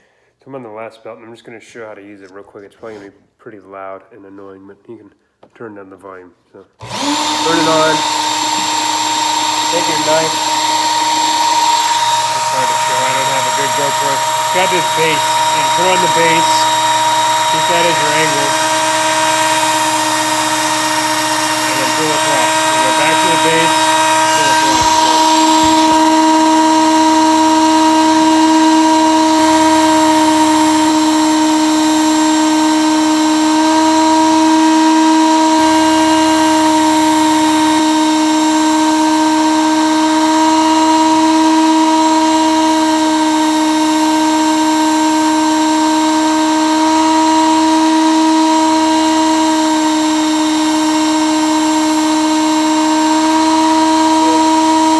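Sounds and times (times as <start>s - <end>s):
belt knife sharpener whining: 6.8s - 34.6s.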